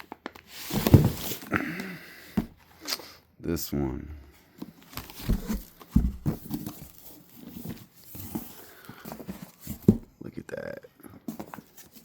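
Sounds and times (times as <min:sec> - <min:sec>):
rustling wrapping and cardboard: 0:00.0 - 0:03.0, 0:04.5 - 0:10.2, 0:11.1 - 0:12.0.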